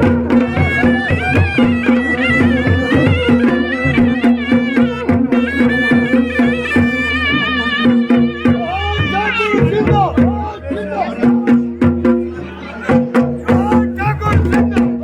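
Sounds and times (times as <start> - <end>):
reedy wind instrument melody: 0.0 - 11.2
drums beating: 0.0 - 15.0.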